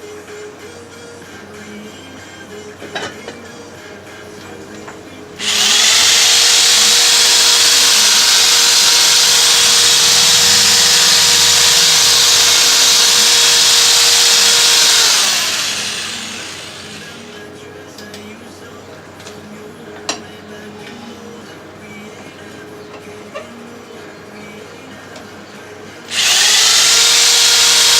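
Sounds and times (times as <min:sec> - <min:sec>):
power sander whining: 0:05.4 - 0:17.4, 0:26.1 - 0:27.9.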